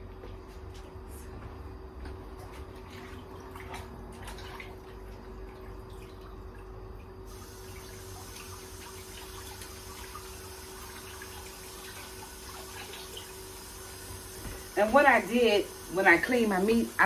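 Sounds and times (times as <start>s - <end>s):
water dripping and trickling: 2.8s - 16.7s
running tap water hissing: 7.2s - 17.0s.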